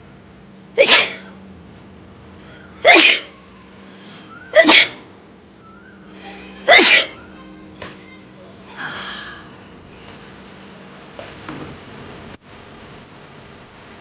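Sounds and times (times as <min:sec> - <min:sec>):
woman sneezing: 0:00.8 - 0:01.3, 0:02.8 - 0:03.4, 0:04.5 - 0:05.0, 0:06.7 - 0:07.2.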